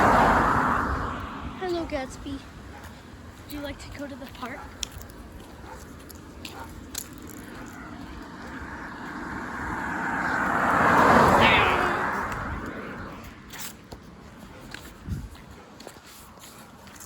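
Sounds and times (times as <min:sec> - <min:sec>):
car driving past: 0:00.0 - 0:01.6, 0:07.7 - 0:13.4.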